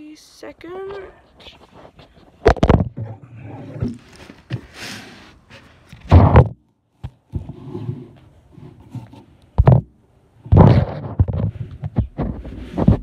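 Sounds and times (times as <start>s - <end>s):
microphone rustle: 0.7s - 6.6s, 10.5s - 13.0s
microphone handling thumps: 0.9s - 4.8s, 5.9s - 7.6s, 9.6s - 9.9s, 10.5s - 13.0s.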